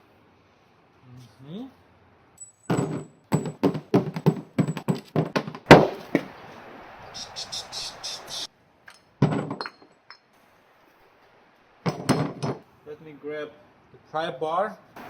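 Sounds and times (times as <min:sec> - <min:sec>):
tools and engine parts clattering: 0:02.4 - 0:06.3, 0:08.9 - 0:10.4, 0:11.9 - 0:12.6
short hiss: 0:07.2 - 0:08.5.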